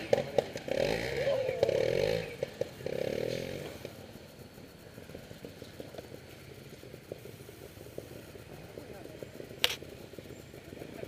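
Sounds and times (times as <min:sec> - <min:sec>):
motorcycle engine revving: 0:00.0 - 0:11.0
small clicks: 0:09.6 - 0:09.8.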